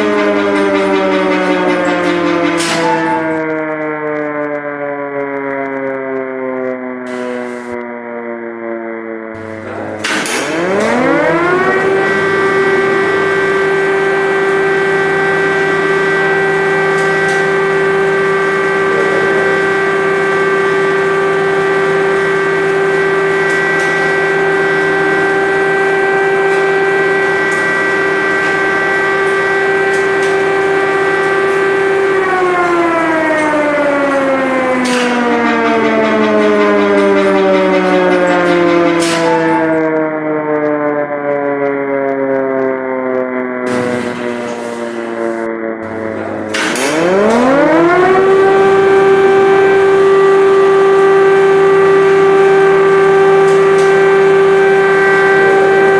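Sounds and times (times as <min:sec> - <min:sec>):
air-raid siren wailing: 0:00.0 - 0:55.9.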